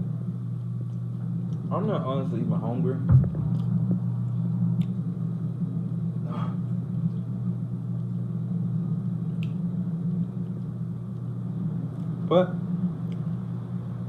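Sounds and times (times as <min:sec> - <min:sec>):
dishwasher humming: 0:03.0 - 0:04.2.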